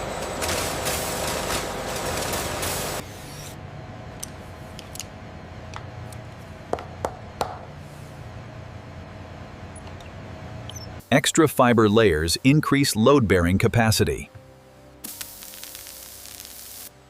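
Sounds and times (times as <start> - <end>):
machine hum: 0.0 - 13.2.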